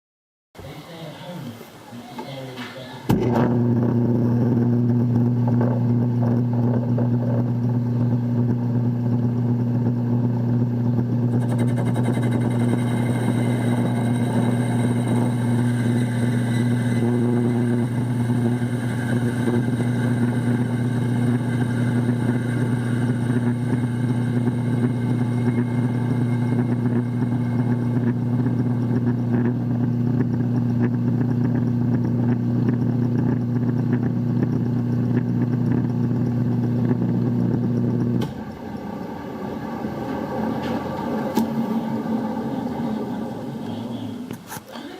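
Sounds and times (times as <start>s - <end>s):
metal lathe humming: 3.4s - 33.6s, 35.6s - 44.9s
high whine of lathe tool cutting: 11.2s - 30.0s, 38.3s - 44.4s.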